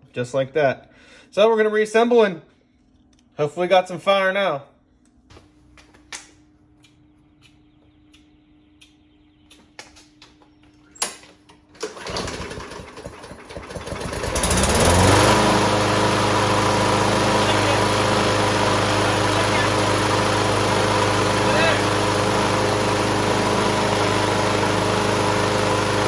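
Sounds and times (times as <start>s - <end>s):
lawn mower engine running: 11.8s - 26.0s.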